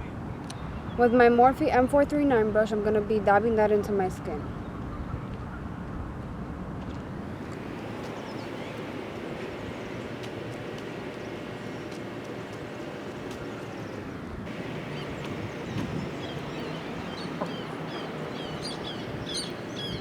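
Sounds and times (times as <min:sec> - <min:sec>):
faint hum: 0:07.3 - 0:20.0.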